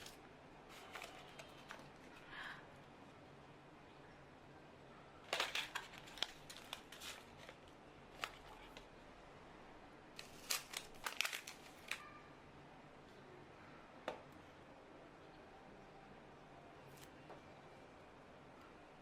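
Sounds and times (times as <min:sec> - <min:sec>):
packaging crinkling: 0:00.0 - 0:02.2, 0:05.3 - 0:08.8, 0:10.2 - 0:12.0.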